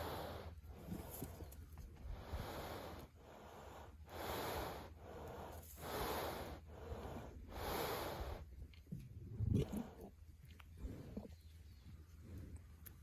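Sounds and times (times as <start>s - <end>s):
cow breathing heavily: 0.0s - 12.8s.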